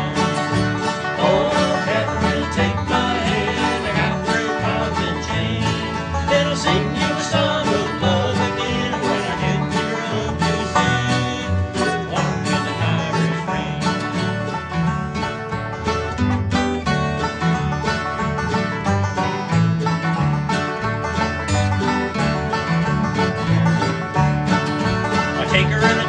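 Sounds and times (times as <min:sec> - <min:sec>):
plucked-string folk tune: 0:00.0 - 0:26.0.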